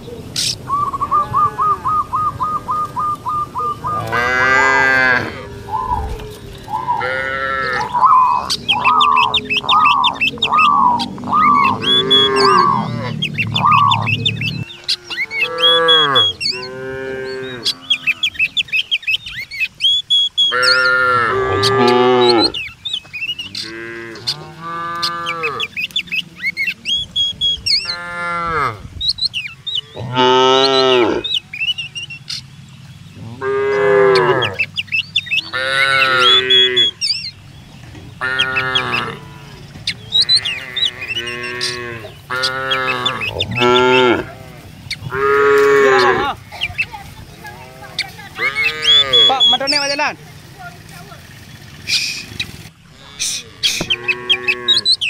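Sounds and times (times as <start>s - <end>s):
cattle mooing: 3.6s - 18.5s, 20.4s - 22.6s, 23.4s - 25.8s, 27.8s - 28.8s, 29.8s - 31.3s, 33.2s - 37.1s, 38.1s - 46.7s, 47.4s - 50.0s, 52.8s - 55.0s.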